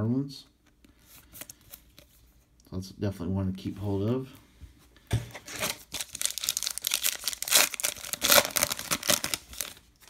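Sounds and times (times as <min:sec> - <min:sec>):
wrapper being torn and crinkled: 0:05.6 - 0:09.8.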